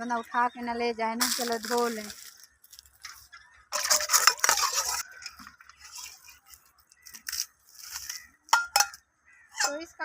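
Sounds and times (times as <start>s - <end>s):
utensils clinking: 1.2s - 9.0s.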